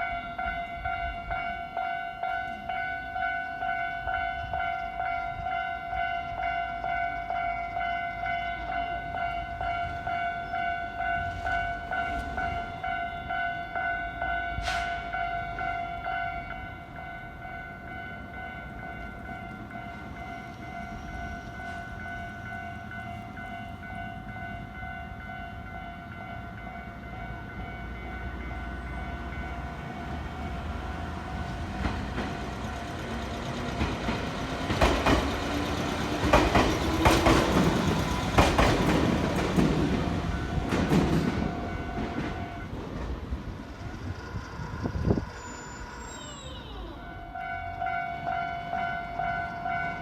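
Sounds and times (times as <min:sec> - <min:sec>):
train whine: 0:00.0 - 0:50.0
wheels clacking over rail joints: 0:28.0 - 0:45.6.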